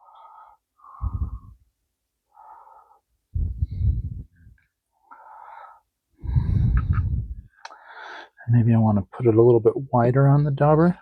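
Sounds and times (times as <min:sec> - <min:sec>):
person breathing: 0:00.0 - 0:01.7, 0:02.3 - 0:08.4.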